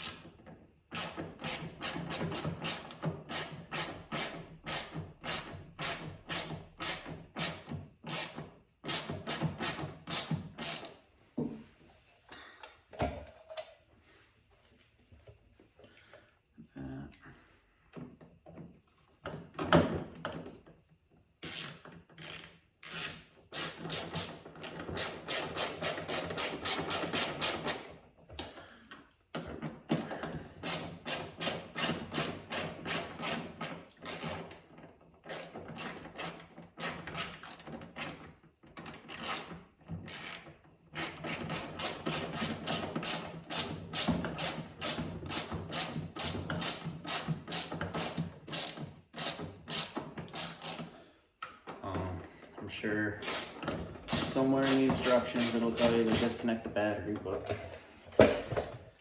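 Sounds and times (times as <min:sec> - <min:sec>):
ratchet wrench clicking: 0:21.4 - 0:24.3, 0:34.0 - 0:34.6, 0:35.3 - 0:38.2, 0:38.9 - 0:39.5, 0:41.0 - 0:50.9, 0:53.2 - 0:56.2.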